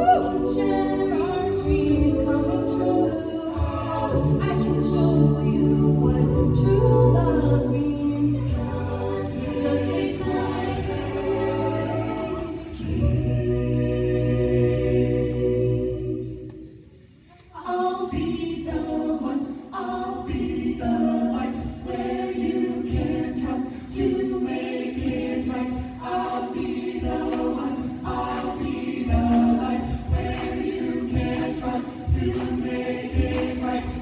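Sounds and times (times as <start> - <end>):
a cappella group singing: 0.0 - 34.0
low thumping beat: 20.3 - 34.0.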